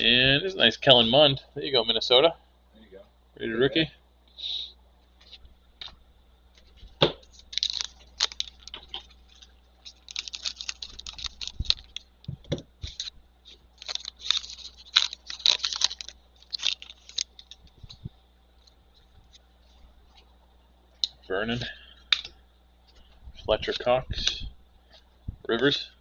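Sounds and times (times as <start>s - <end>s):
plastic wrapper crackling: 7.3s - 18.1s.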